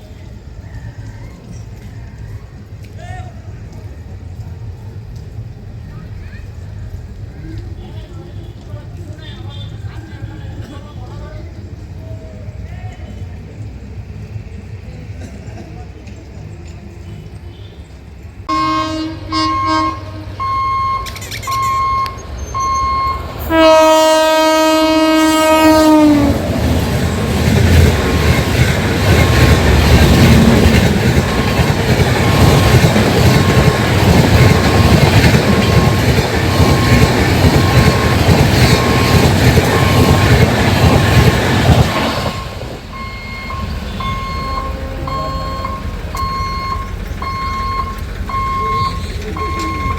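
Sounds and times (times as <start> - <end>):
train rumbling past: 0.0 - 49.9
train horn blast: 18.5 - 20.9, 22.6 - 26.5, 42.0 - 46.0
electronic warning beeps: 19.5 - 23.4, 30.3 - 41.5, 42.2 - 49.9.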